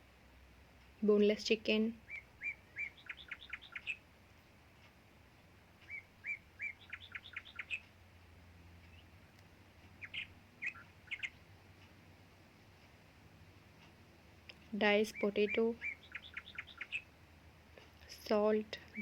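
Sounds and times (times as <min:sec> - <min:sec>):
songbird chirping and trilling: 0:00.2 - 0:19.0.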